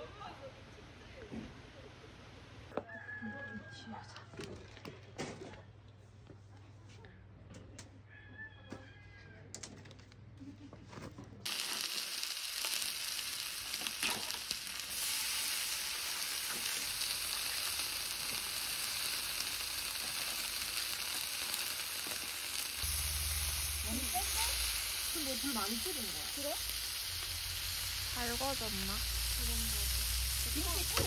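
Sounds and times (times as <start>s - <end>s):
food sizzling in a hot pan: 11.5s - 31.0s.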